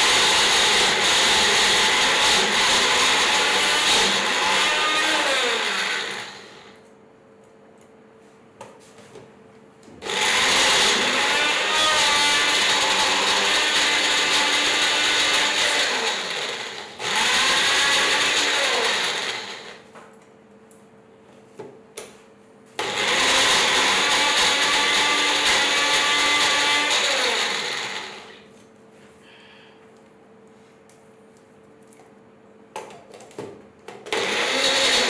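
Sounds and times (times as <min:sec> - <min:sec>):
mixer grinder motor whining: 0:00.0 - 0:06.8, 0:10.0 - 0:19.9, 0:22.8 - 0:28.5, 0:34.1 - 0:35.0.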